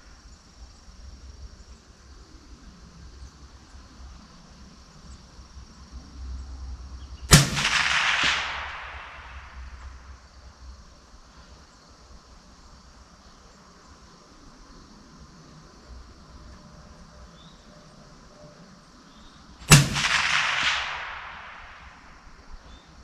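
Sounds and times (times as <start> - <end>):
rifle shot echoing: 7.3 - 10.2, 19.7 - 22.8.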